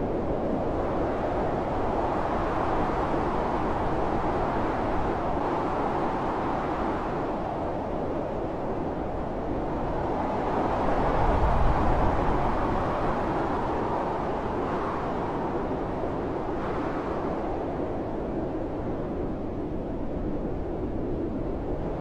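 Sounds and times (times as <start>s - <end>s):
blizzard wind blowing hard: 0.0s - 22.0s.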